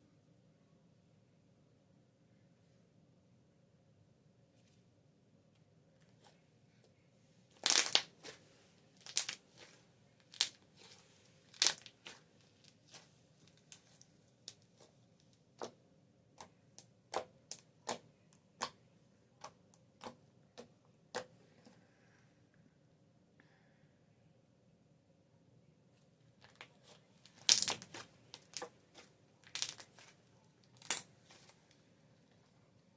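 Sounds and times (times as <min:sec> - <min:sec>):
slime popping and crackling: 0:07.6 - 0:08.4, 0:09.0 - 0:10.7, 0:11.5 - 0:13.9, 0:27.3 - 0:31.4.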